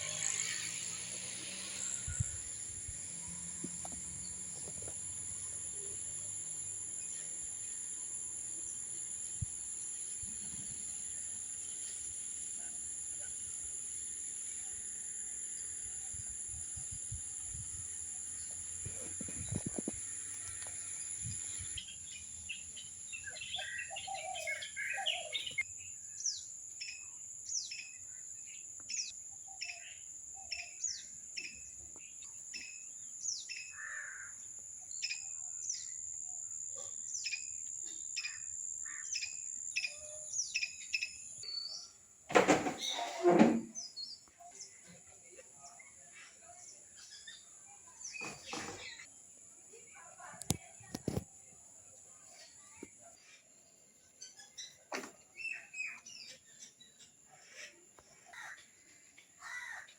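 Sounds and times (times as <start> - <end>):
birds chirping: 17.1 - 36.2.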